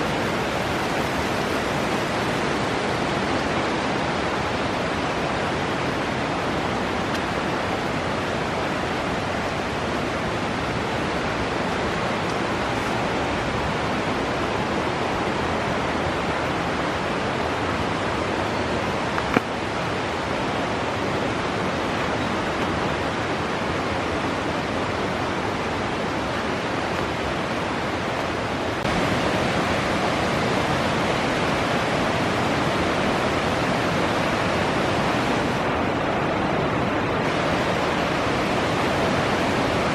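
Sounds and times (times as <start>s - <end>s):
rush of flowing water: 0.0s - 39.9s.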